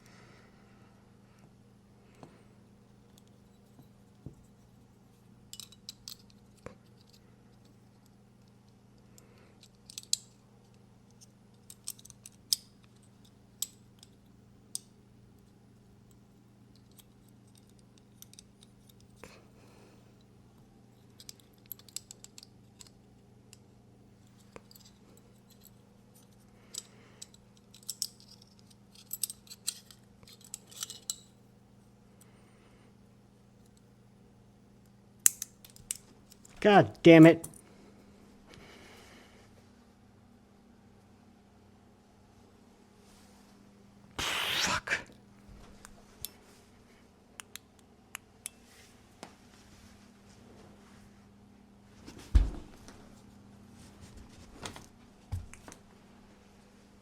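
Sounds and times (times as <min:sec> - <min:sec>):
small metallic clicks and taps: 0:35.2 - 0:36.5.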